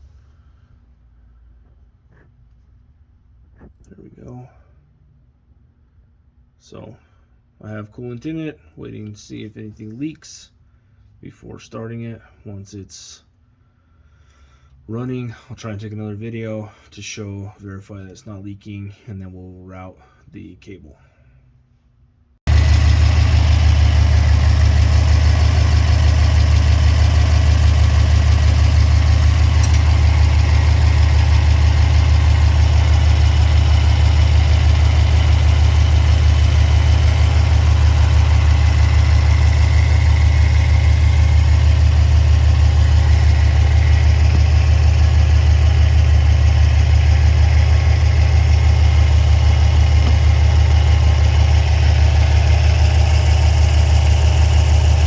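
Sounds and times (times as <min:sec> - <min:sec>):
car engine idling: 0:22.5 - 0:55.0.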